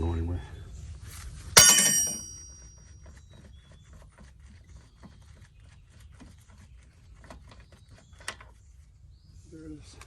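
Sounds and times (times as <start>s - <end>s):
steel tool clanging on metal: 1.6s - 2.8s.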